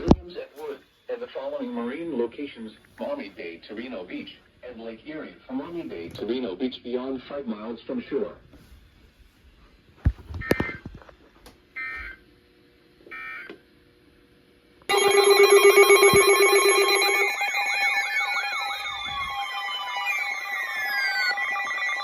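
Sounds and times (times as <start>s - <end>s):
data tone bursts: 14.9s - 22.0s
overlapping electronic alarm tones: 14.9s - 22.0s
warbling siren-like glides: 16.9s - 22.0s.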